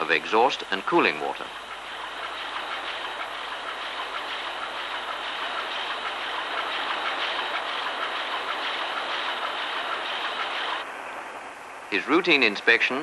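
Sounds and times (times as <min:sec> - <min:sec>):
marine diesel engine clatter: 0:00.0 - 0:10.8
faint ticking: 0:00.6 - 0:10.8.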